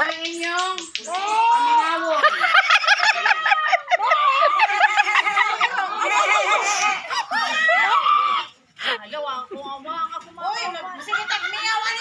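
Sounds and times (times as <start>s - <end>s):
people imitating animal calls: 0.0s - 8.6s.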